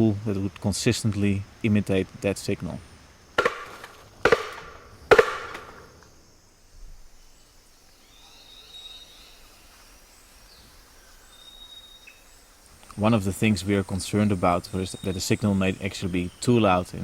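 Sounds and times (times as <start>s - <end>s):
sharp wooden double knock: 3.4s - 5.9s
faint high-pitched bird calls: 7.2s - 12.8s.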